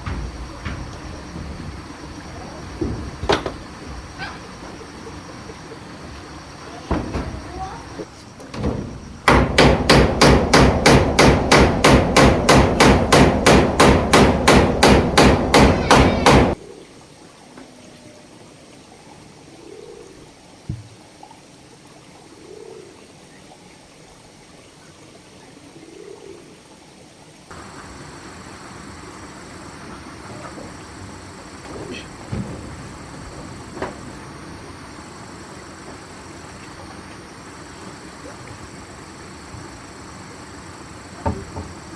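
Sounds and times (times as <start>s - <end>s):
hammer strikes: 9.2s - 16.6s.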